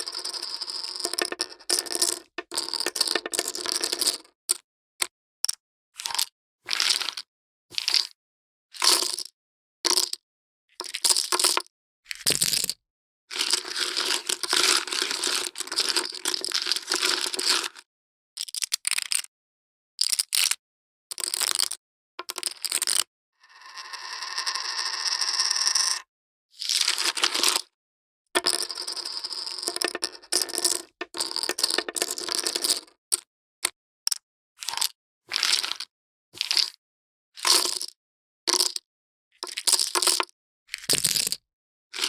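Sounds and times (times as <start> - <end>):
poker chips clattering: 0.8 - 4.1, 28.4 - 32.9
poker chips clicking: 1.0 - 3.9.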